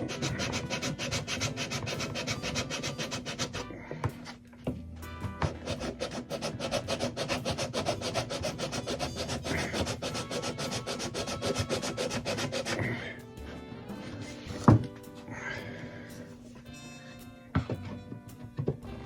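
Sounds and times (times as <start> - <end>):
rasp abrading wood: 0.0 - 4.3, 5.4 - 13.2
background music: 0.0 - 19.0.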